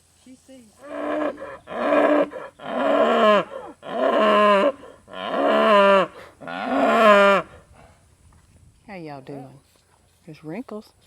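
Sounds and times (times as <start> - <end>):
cattle mooing: 0.8 - 7.5.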